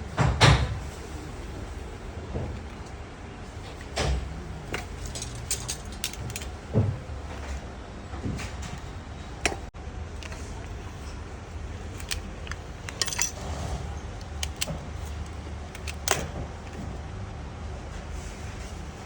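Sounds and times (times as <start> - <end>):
low machine hum: 0.0 - 19.0
small metal parts clinking: 4.7 - 6.6, 11.9 - 13.4.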